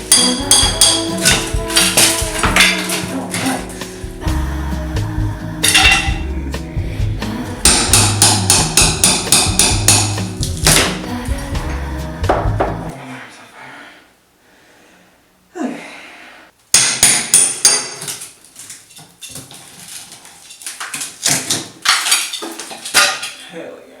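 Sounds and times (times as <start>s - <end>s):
hand hammer blows: 0.0s - 4.5s, 5.6s - 6.3s, 7.0s - 12.9s.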